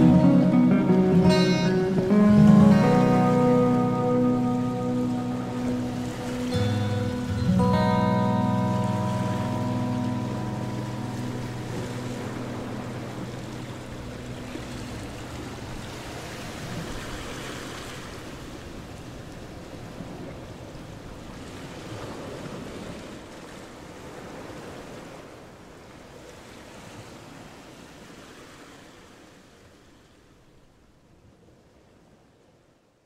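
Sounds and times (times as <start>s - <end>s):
acoustic guitar music: 0.0s - 17.0s.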